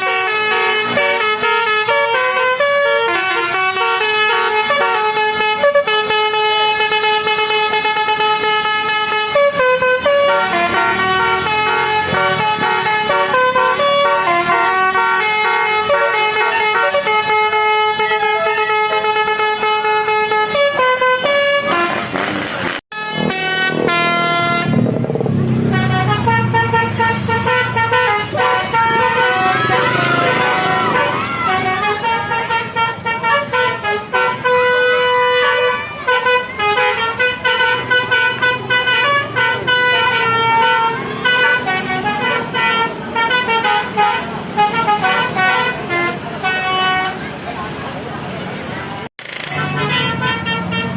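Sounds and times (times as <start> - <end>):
multi-tone musical bus horn: 0.0 - 47.6, 49.2 - 50.9
bus engine rumbling: 0.0 - 50.9.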